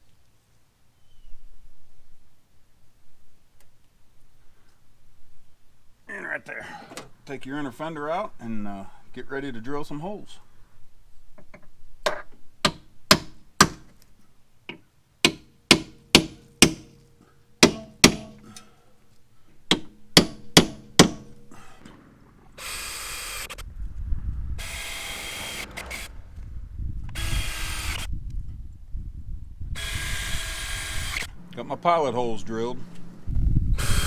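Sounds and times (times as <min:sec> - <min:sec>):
power drill running: 0:22.6 - 0:23.6, 0:24.6 - 0:26.2, 0:27.1 - 0:28.1, 0:29.8 - 0:31.4, 0:33.8 - 0:34.0.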